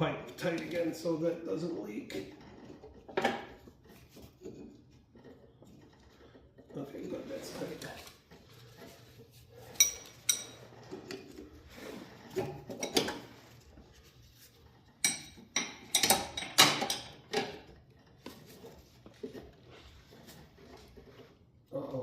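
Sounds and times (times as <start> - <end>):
metal tools clinking on metal pipe: 9.7 - 11.2, 15.0 - 17.7.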